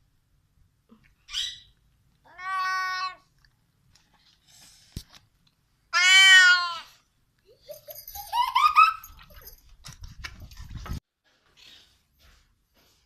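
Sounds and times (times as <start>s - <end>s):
cat meowing: 5.9s - 7.0s.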